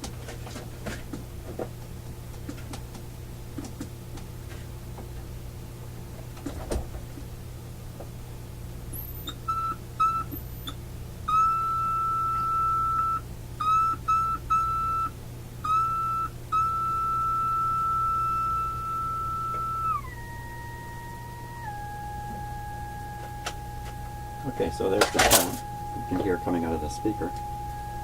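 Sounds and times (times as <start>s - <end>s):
high whistle: 9.0s - 28.0s
test tone beeps: 9.2s - 15.1s, 21.6s - 28.0s.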